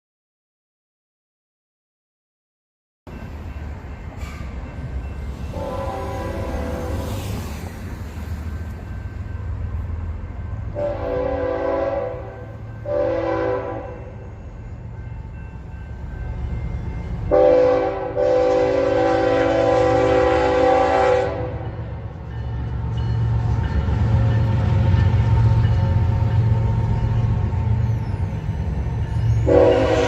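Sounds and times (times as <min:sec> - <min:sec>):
low train rumble: 0:03.1 - 0:30.0
locomotive air horn blasts: 0:05.5 - 0:07.1, 0:10.8 - 0:14.2, 0:17.3 - 0:21.8, 0:29.4 - 0:30.0.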